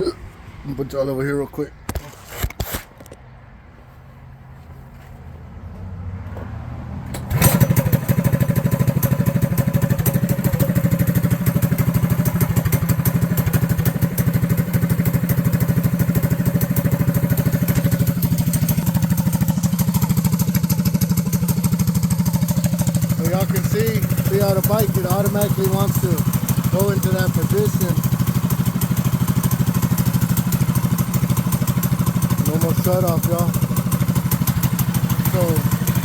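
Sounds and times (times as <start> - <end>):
mini bike engine running: 7.2 - 36.0.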